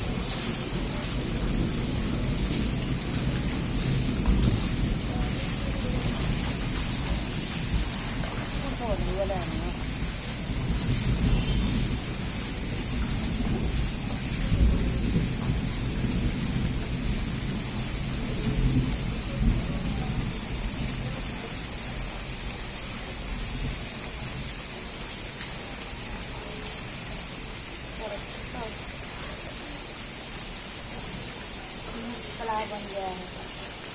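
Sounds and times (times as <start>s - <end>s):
rolling thunder rumble: 0.0s - 22.4s
steady rain: 0.0s - 33.9s.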